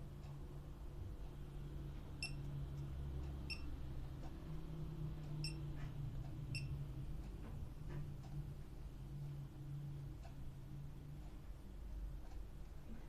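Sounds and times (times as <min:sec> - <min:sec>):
low steady hum: 0:00.0 - 0:13.0
short high-pitched beeps: 0:02.2 - 0:02.4.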